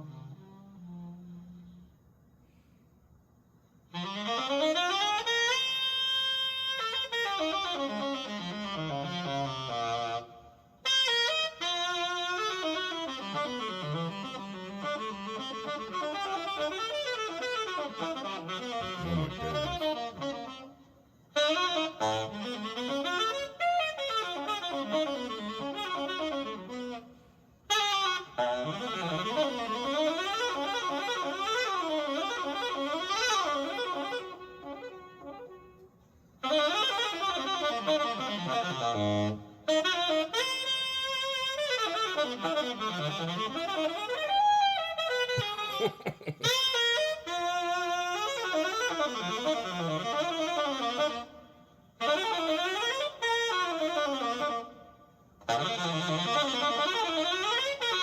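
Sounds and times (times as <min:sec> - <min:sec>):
tenor saxophone arpeggio runs: 0:04.0 - 0:20.8, 0:27.7 - 0:35.8, 0:36.4 - 0:51.4, 0:52.0 - 0:54.8, 0:55.4 - 0:58.0.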